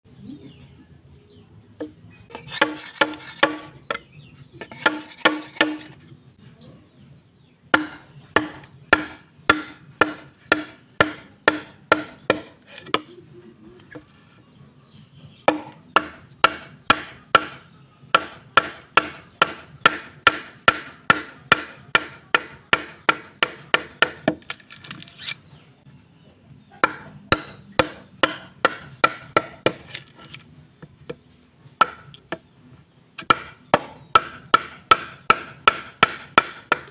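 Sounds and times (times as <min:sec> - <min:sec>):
hollow knocks on bamboo: 0:04.7 - 0:05.9, 0:15.5 - 0:24.4.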